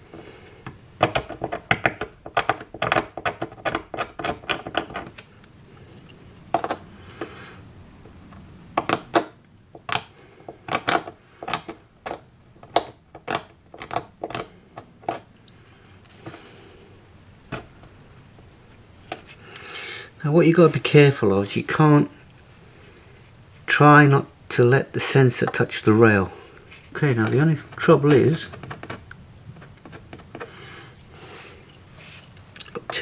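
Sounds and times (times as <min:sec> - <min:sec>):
small metal parts clicking: 0:05.9 - 0:07.3.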